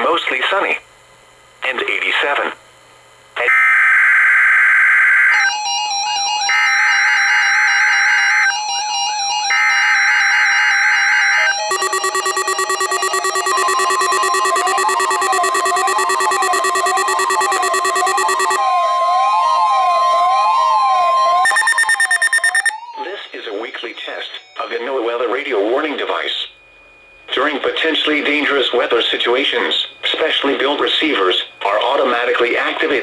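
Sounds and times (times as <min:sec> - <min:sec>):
electronic music: 0:11.5 - 0:18.6
screeching digital data tones: 0:11.5 - 0:18.6, 0:21.4 - 0:22.8
warbling synth tones: 0:11.6 - 0:18.6.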